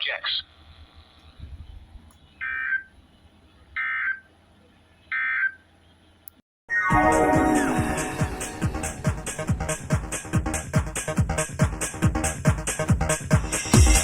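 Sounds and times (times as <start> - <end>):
music: 6.7 - 14.0.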